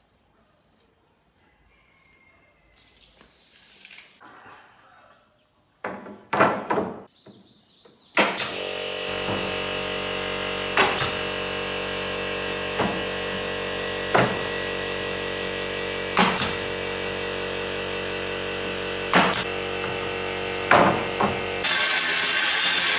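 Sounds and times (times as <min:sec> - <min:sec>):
power tool motor running: 0:08.2 - 0:22.9
sharp knocks: 0:16.2 - 0:16.6, 0:19.1 - 0:20.0, 0:20.7 - 0:21.4.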